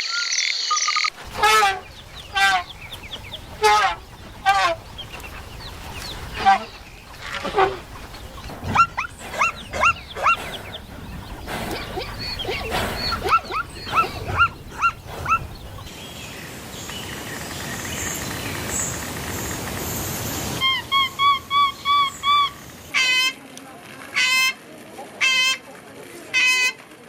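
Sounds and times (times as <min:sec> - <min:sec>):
steady outdoor hiss: 0:00.9 - 0:27.0
dog yelping: 0:08.3 - 0:15.9.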